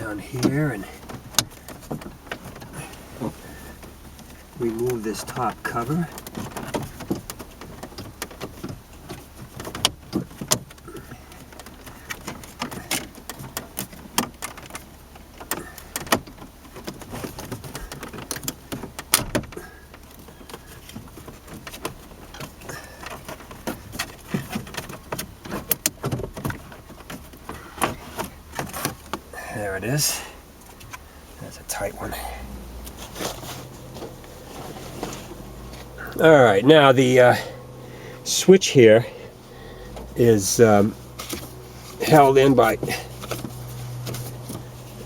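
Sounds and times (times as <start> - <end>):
plastic cover clicking and creaking: 5.2 - 29.3.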